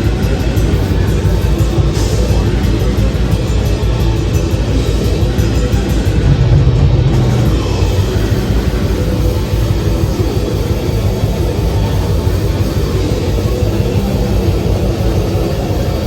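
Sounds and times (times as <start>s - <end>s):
distorted guitars and bass: 0.0s - 16.0s
fast dense drumming: 0.0s - 16.0s.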